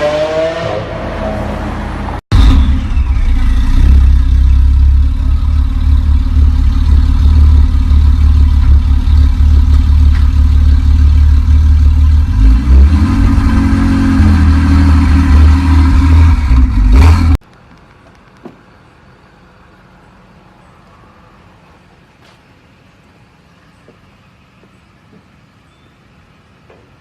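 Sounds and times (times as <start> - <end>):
car engine running: 2.3 - 17.4.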